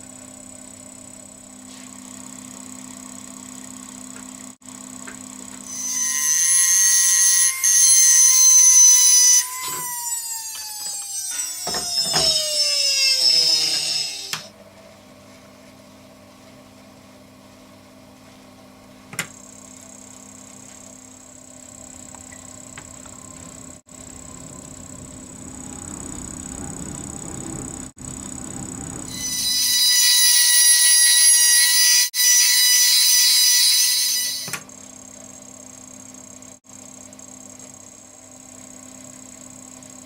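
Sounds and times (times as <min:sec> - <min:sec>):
spinning machine whining: 0:05.7 - 0:14.5.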